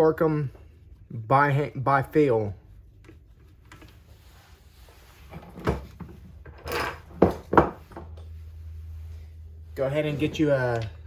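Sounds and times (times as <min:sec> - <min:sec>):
hand tools knocking and clattering: 0:06.4 - 0:08.2.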